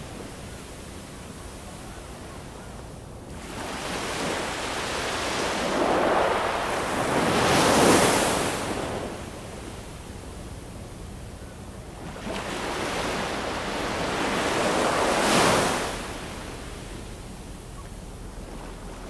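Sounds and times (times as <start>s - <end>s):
ocean waves washing: 0.0s - 19.0s.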